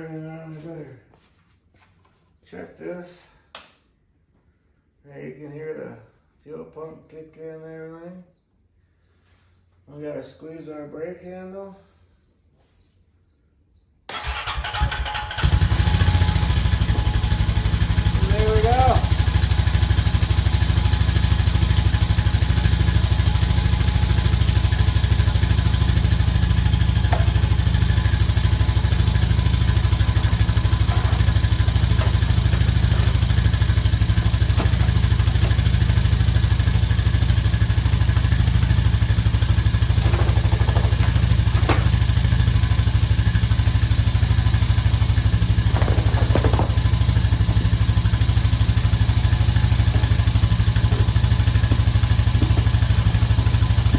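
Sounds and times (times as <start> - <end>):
atv engine idling: 14.1 - 53.9.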